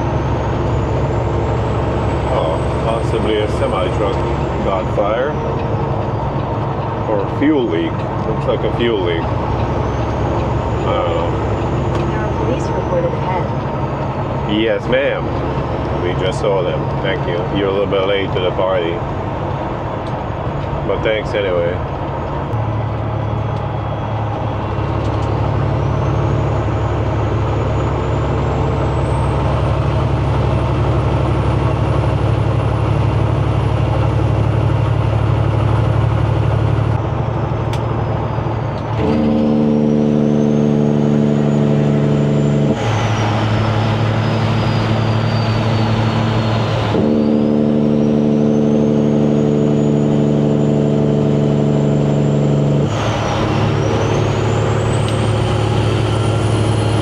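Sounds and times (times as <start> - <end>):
diesel truck engine running: 0.0 - 57.0
turbo whistle: 39.0 - 57.0.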